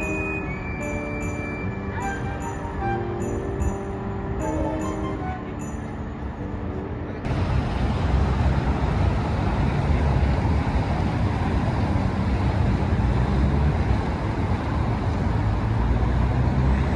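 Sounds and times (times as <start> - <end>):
music: 0.0 - 7.3
road traffic rumble: 0.0 - 16.9.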